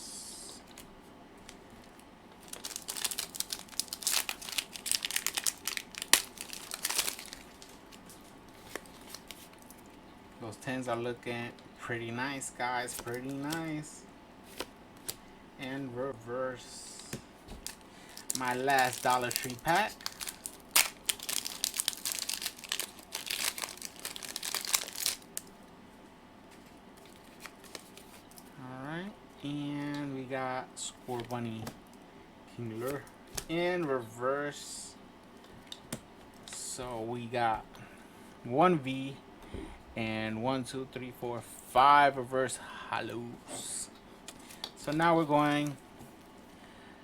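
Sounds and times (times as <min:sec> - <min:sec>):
foil wrapper crinkling: 0:01.8 - 0:09.9, 0:12.9 - 0:13.7, 0:17.6 - 0:25.5, 0:27.0 - 0:28.5.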